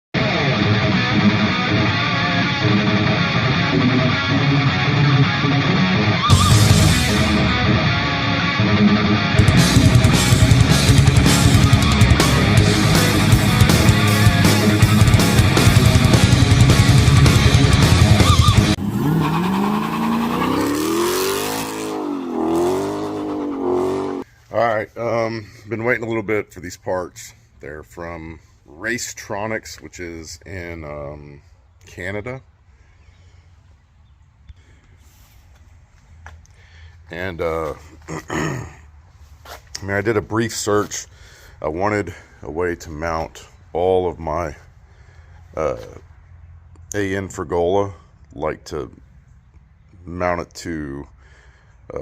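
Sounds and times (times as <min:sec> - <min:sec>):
electric guitar strumming: 0:00.2 - 0:19.1, 0:20.2 - 0:24.2
heavy rock music: 0:00.2 - 0:24.2
bass guitar: 0:00.2 - 0:28.5, 0:39.7 - 0:46.1
vehicle engine revving: 0:00.4 - 0:24.3.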